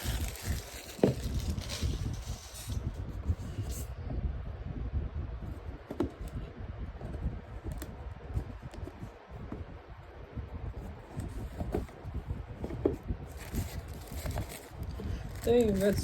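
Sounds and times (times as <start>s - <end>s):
packaging rustling: 0.0s - 2.8s, 13.3s - 16.0s
steady low rumble: 0.0s - 16.0s.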